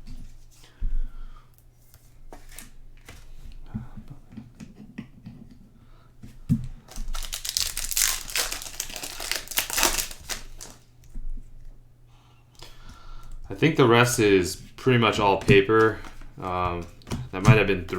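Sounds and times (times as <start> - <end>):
cards clicking and rustling: 6.9 - 10.8, 15.2 - 17.9
foil wrapper crinkling and tearing: 6.9 - 10.8.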